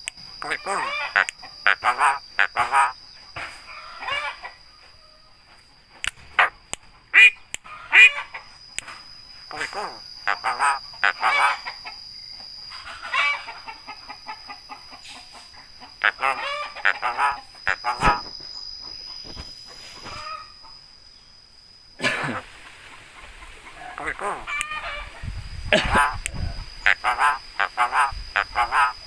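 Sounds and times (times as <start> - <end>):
myna bird calls: 0.4 - 4.5, 6.0 - 8.4, 9.5 - 12.0, 12.8 - 20.7, 22.9 - 29.0.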